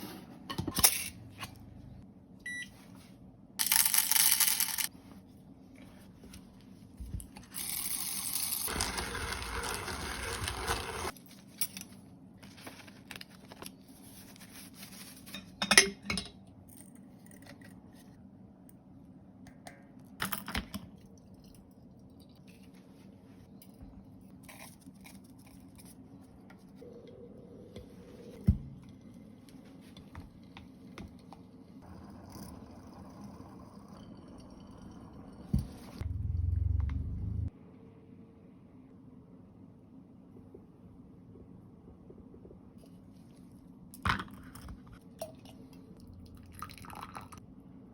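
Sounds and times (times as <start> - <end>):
brief steady tone: 2.4 - 2.7
glassware and utensils clinking: 15.3 - 16.4.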